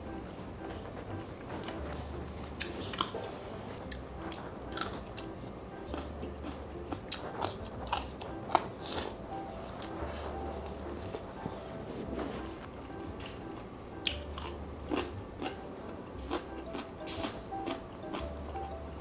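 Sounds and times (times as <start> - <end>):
person chewing crunchy food: 0.8 - 19.0.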